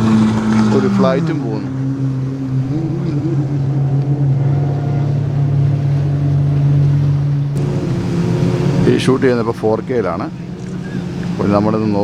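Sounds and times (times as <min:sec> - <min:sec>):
engine droning: 0:02.3 - 0:12.0
background rush: 0:04.7 - 0:12.0.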